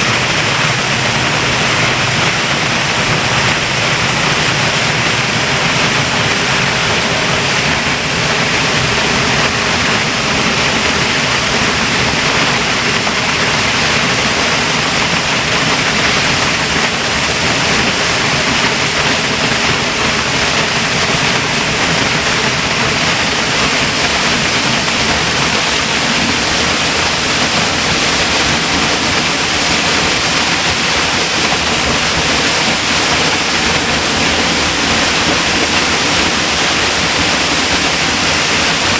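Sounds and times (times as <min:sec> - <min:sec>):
waterfall rushing: 0:00.0 - 0:38.9.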